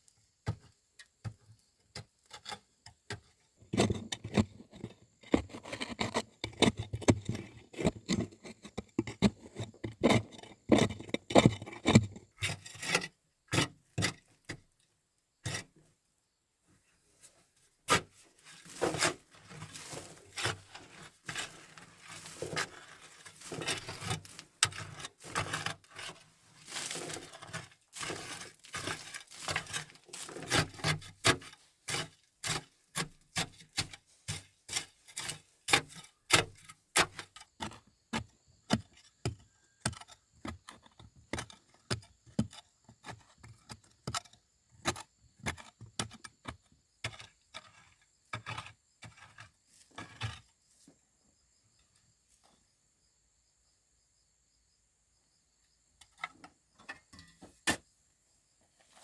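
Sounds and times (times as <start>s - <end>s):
wood rustling and scraping: 17.1s - 32.7s.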